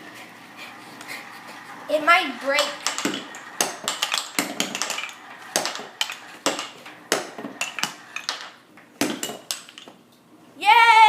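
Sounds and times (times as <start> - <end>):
marbles clattering on wooden blocks: 2.4 - 10.0.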